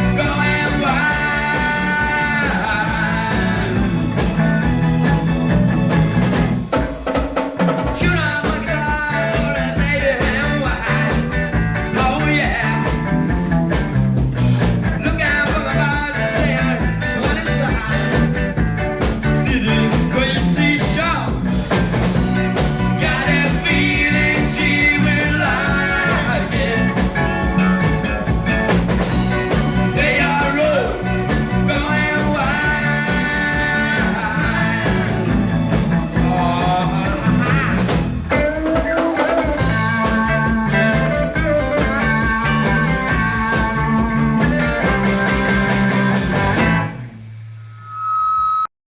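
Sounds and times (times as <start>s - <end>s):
band playing rock music: 0.0s - 47.2s.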